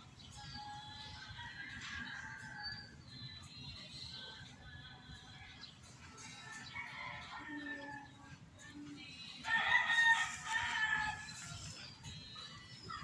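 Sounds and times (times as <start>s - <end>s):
rooster crowing: 9.4s - 11.8s.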